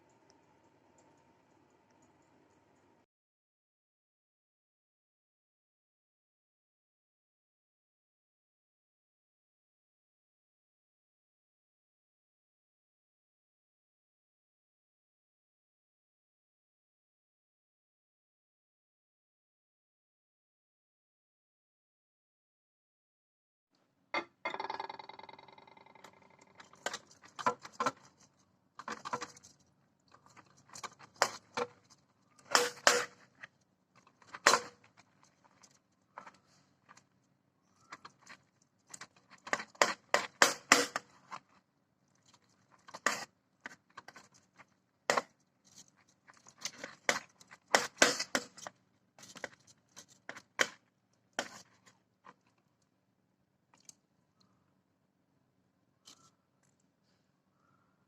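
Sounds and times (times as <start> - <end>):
knife blade striking cutting board: 32.5 - 33.2.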